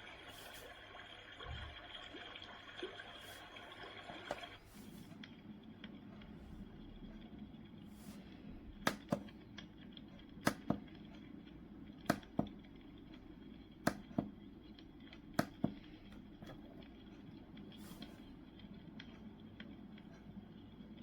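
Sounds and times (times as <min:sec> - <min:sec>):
low steady hum: 0:00.0 - 0:21.0
sharp clicks in pairs: 0:10.4 - 0:10.9.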